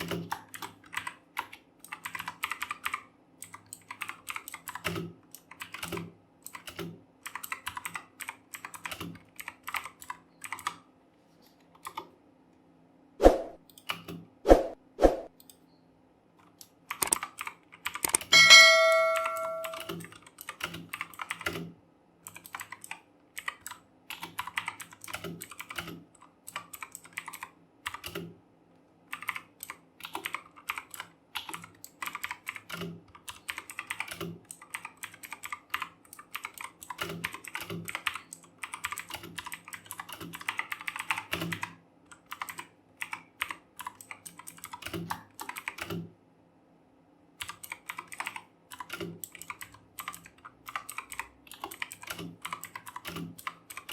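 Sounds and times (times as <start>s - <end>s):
mechanical keyboard typing clicks: 0.0s - 10.8s, 16.5s - 21.7s, 22.3s - 28.3s, 29.1s - 46.1s, 47.4s - 53.9s.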